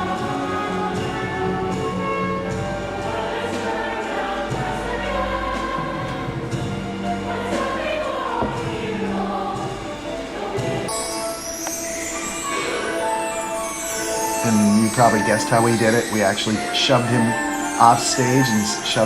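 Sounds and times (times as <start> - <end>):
choir singing with accompaniment: 0.0 - 19.0
bright high tone: 10.9 - 19.0.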